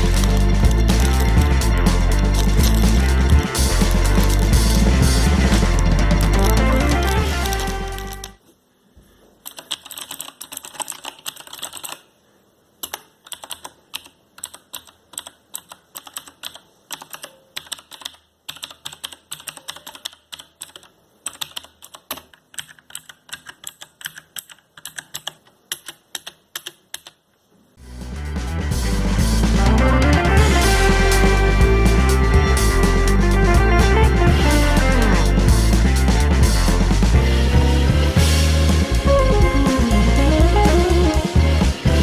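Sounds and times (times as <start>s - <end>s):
background music: 0.0s - 8.4s, 27.8s - 42.0s
clicky mechanical keyboard typing: 9.4s - 12.1s, 12.8s - 27.2s.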